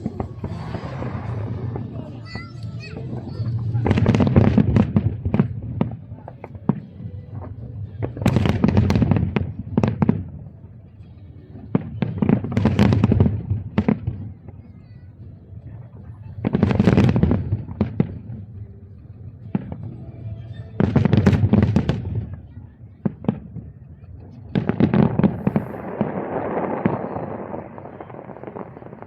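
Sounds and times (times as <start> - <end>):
fireworks booms and bangs: 0.0 - 29.0
fireworks crackling and pops: 0.0 - 29.0.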